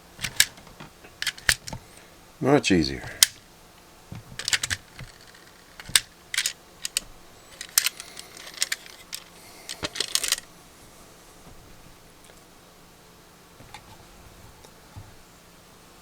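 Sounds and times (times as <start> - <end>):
small parts clicking and rattling: 0.0 - 2.0, 2.9 - 3.5, 4.1 - 10.5.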